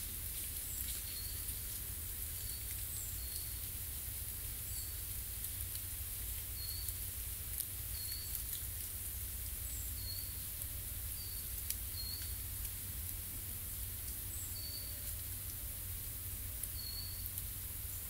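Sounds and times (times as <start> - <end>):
small birds chirping: 0.4 - 3.7, 6.3 - 8.7, 9.5 - 12.7, 14.0 - 15.2, 16.6 - 18.0.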